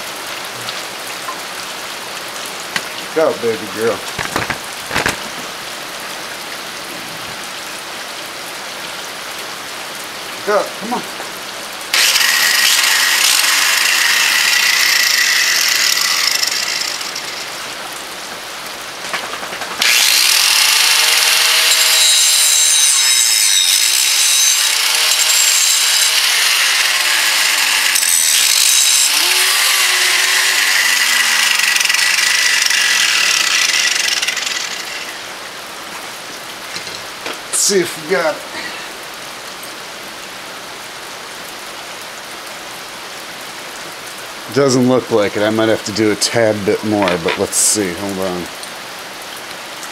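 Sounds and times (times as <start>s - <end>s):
rain hiss: 0.0s - 12.2s, 14.2s - 20.8s, 34.8s - 49.9s
angle grinder grinding metal: 11.9s - 18.0s, 19.8s - 35.4s.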